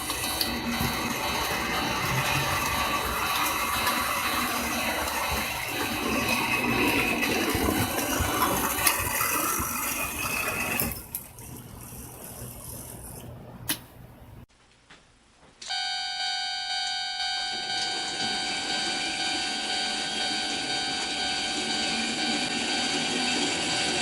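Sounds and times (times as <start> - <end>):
model train rattling on track: 0.0 - 11.2.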